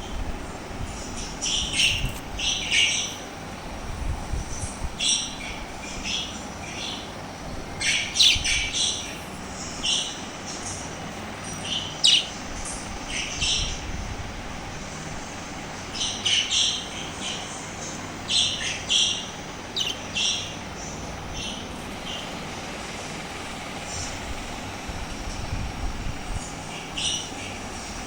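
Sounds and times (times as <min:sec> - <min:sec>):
parrots chirping and squawking: 0:01.4 - 0:03.2, 0:07.8 - 0:13.6, 0:18.2 - 0:22.3.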